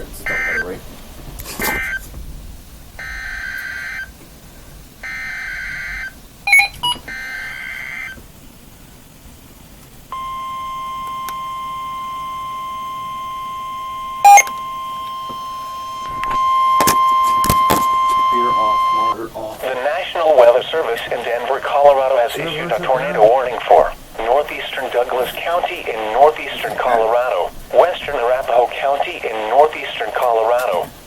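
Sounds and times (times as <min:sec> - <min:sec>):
steady warning alarm tone: 0:00.0 - 0:00.8, 0:01.7 - 0:02.0, 0:03.0 - 0:04.2, 0:05.0 - 0:08.2, 0:10.1 - 0:19.3
warbling data bursts: 0:00.0 - 0:00.8, 0:10.1 - 0:30.2
short sharp beeps: 0:06.5 - 0:07.0, 0:10.1 - 0:19.2.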